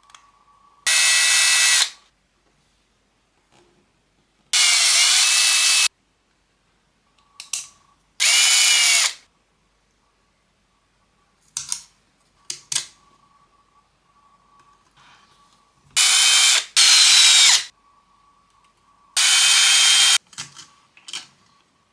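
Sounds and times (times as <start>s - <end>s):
power drill motor whine: 0.9s - 2.0s, 4.6s - 5.9s, 8.2s - 9.2s, 16.0s - 17.7s, 19.2s - 20.2s.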